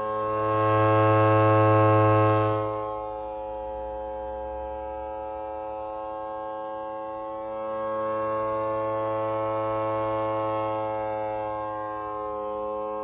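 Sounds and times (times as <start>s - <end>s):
siren buzzing tone: 0.0s - 4.1s.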